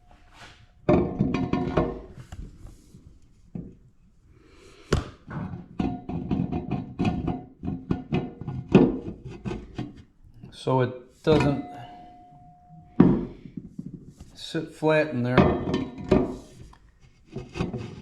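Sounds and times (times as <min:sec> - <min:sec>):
metal parts clanking with ringing: 0:11.3 - 0:13.5, 0:15.3 - 0:16.5.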